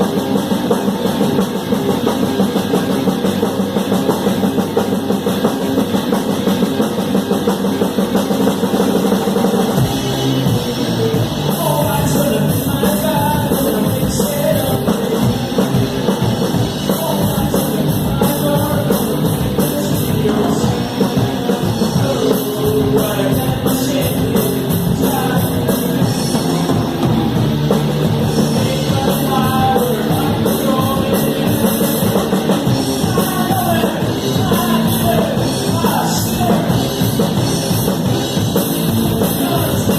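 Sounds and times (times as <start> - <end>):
amplified guitar and bass: 0.0 - 39.9
drums and cymbals: 0.0 - 39.9.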